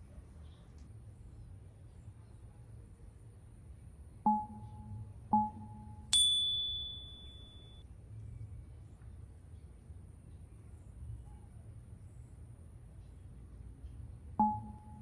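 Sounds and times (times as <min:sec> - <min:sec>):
three-note electronic chime: 0:04.3 - 0:07.8, 0:14.4 - 0:15.0.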